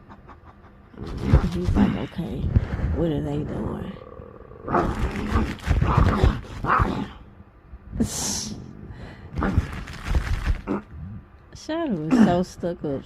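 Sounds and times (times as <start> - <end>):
dog growling: 0.0 - 7.3, 8.5 - 11.3.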